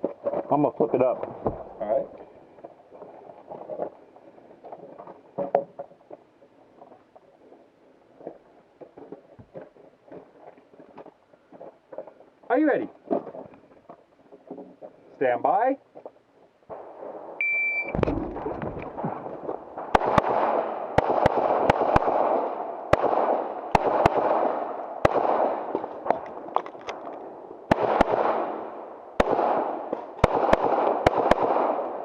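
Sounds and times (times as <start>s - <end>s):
shot timer beep: 17.4s - 18.0s
pistol shots echoing: 19.7s - 26.2s, 27.7s - 32.0s.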